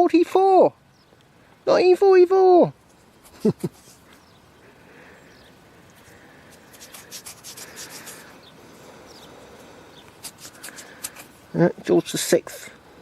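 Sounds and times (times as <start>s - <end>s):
fingers rubbing a coin: 6.5s - 8.3s, 10.2s - 11.4s.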